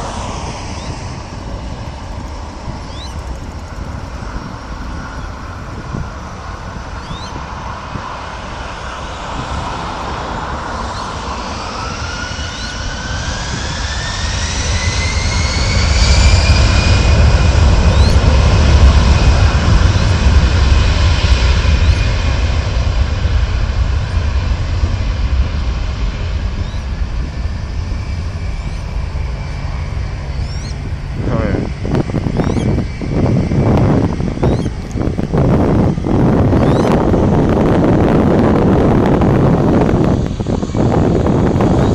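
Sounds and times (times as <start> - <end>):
jet airliner passing: 0.0 - 41.9.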